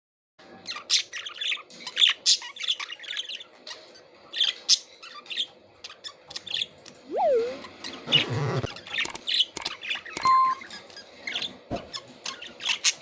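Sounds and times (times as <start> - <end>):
budgerigars chirping and squawking: 0.7 - 9.7.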